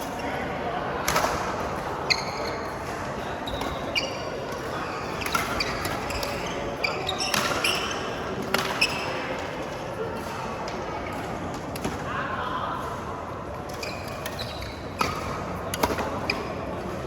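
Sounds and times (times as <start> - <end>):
shoes squeaking on court: 2.0 - 9.3, 13.7 - 17.0
rackets striking shuttlecock: 14.2 - 16.6.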